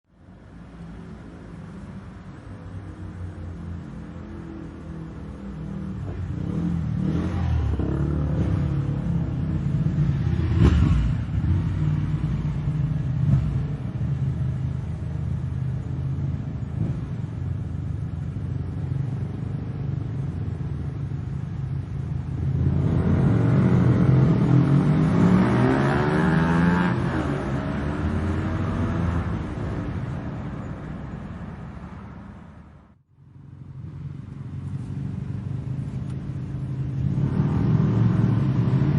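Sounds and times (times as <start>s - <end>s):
motorbike engines revving: 4.5s - 14.5s, 22.2s - 30.8s, 35.0s - 38.9s.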